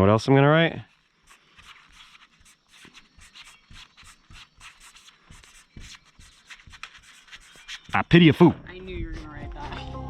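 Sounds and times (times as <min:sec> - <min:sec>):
writing scratching on metal: 0:01.2 - 0:08.2.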